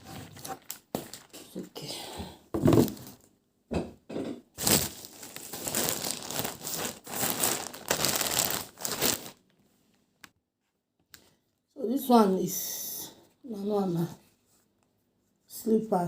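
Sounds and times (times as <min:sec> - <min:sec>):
packaging crinkling: 0:00.0 - 0:01.6, 0:04.6 - 0:09.6.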